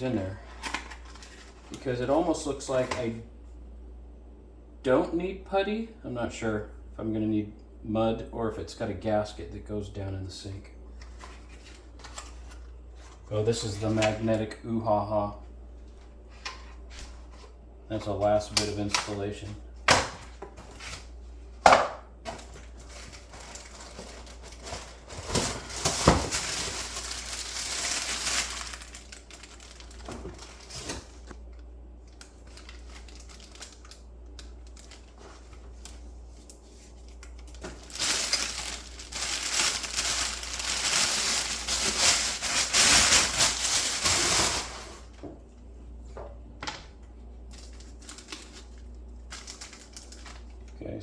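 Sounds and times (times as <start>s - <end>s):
packaging crinkling: 22.3s - 45.1s, 47.5s - 50.7s.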